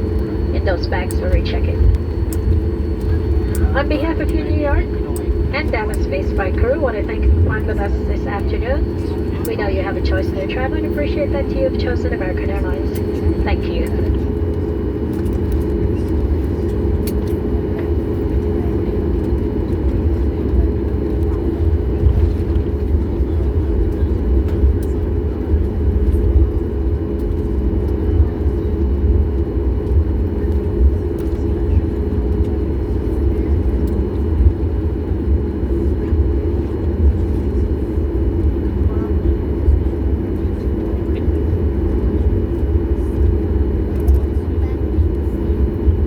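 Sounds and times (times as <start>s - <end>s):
aircraft cabin rumble: 0.0s - 46.0s.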